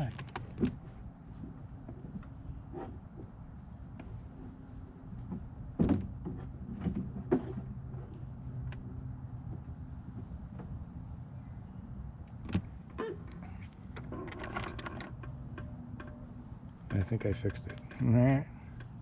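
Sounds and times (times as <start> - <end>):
clicks and knocks from scooter: 0.0 - 3.3, 5.3 - 8.8, 12.3 - 16.2.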